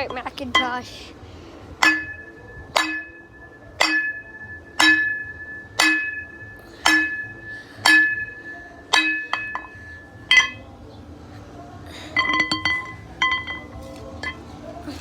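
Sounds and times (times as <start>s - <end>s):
glass object struck ringing: 1.8s - 10.7s, 12.2s - 14.4s.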